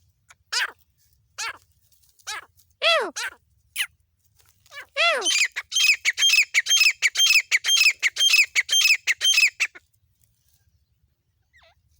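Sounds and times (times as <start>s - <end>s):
bird calling sharp repeated notes: 4.8s - 9.8s.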